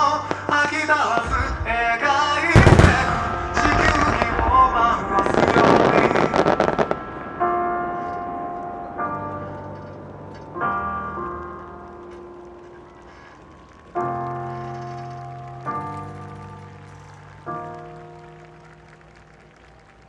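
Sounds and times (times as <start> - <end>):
fireworks crackling: 0.0 - 9.1
fireworks bang: 2.6 - 8.2.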